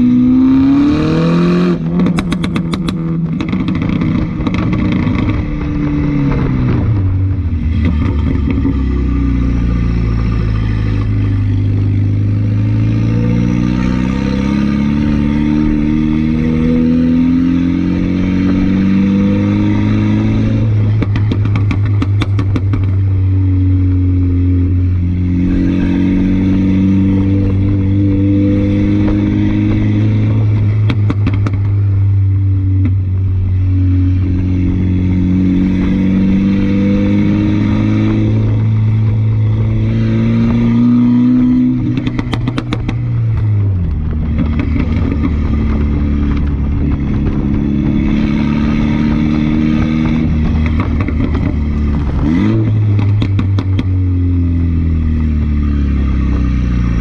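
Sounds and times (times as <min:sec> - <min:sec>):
loud car engine accelerating: 0:00.0 - 0:57.0
exhaust pops and crackles: 0:01.8 - 0:08.8, 0:20.8 - 0:23.2, 0:29.0 - 0:33.4, 0:41.8 - 0:54.0.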